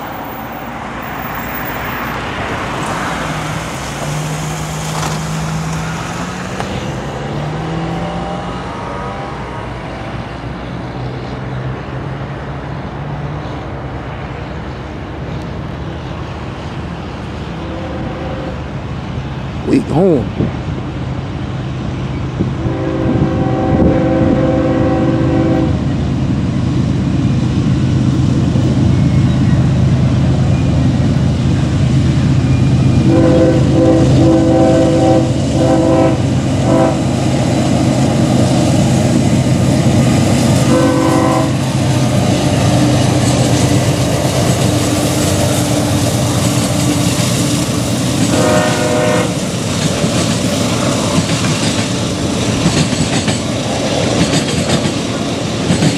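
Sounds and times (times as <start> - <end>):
diesel locomotive engine drone: 0.0 - 55.9
locomotive horn blasts: 17.6 - 18.7, 22.6 - 25.8, 33.0 - 37.1, 40.6 - 41.6, 48.3 - 49.4
train wheels clacking on rails: 25.5 - 55.9.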